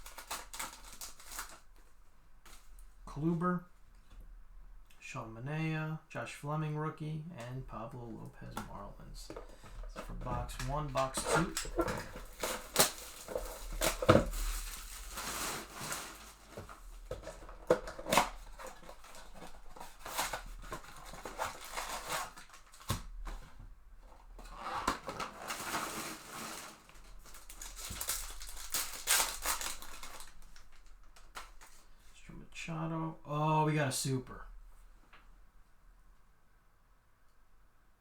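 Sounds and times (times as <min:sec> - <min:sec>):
plastic wrapping crinkling and tearing: 0:00.0 - 0:02.9, 0:09.2 - 0:31.9.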